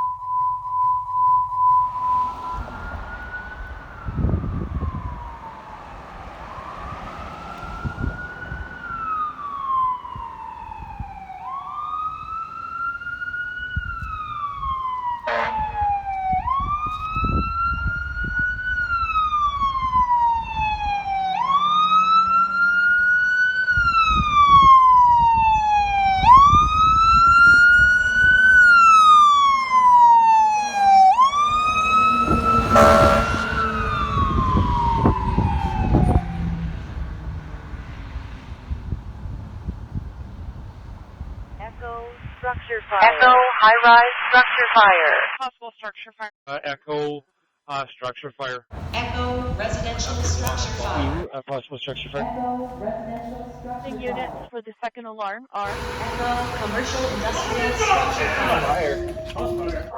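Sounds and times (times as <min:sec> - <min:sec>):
fire engine siren wailing: 0:00.0 - 0:42.6, 0:48.7 - 0:51.3, 0:55.7 - 0:59.9
horn blast: 0:15.2 - 0:15.9, 0:30.3 - 0:37.8, 0:55.7 - 0:59.9.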